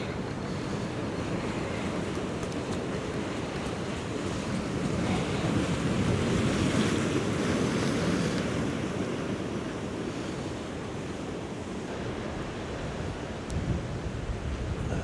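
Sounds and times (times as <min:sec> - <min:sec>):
waves against rocky shore: 0:00.0 - 0:13.5
wind buffeting microphone: 0:12.4 - 0:15.0.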